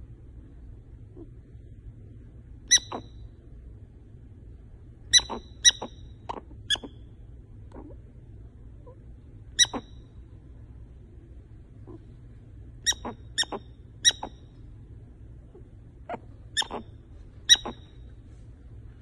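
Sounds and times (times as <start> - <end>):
prairie dog squeaking: 2.7 - 3.2, 5.1 - 7.1, 8.8 - 10.2, 11.8 - 12.2, 12.8 - 14.6, 15.4 - 18.1.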